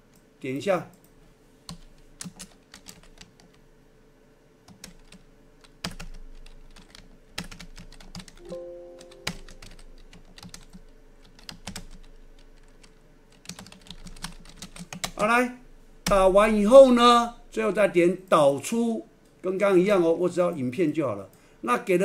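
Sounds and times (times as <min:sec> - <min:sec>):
short electronic tone: 0:08.4 - 0:09.8.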